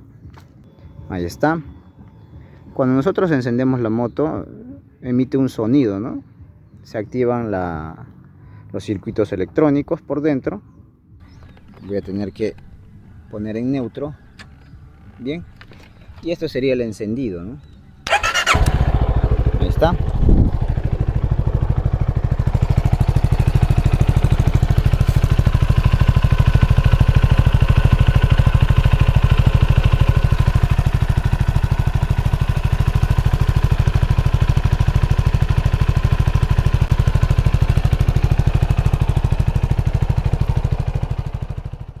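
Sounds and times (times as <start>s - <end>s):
motorcycle engine idling: 11.2s - 42.0s.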